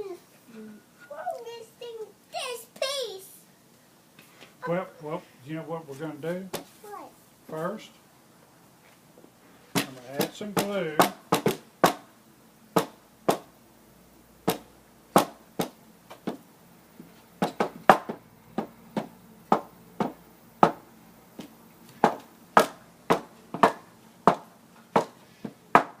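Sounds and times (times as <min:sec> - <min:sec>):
hammer knocking nails into wood: 0:09.8 - 0:12.1, 0:14.5 - 0:16.4, 0:17.4 - 0:26.0.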